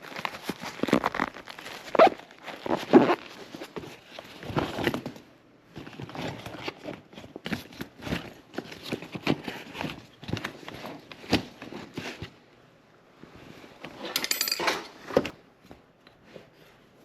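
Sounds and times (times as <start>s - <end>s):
rustling and crinkling: 0.0s - 12.6s.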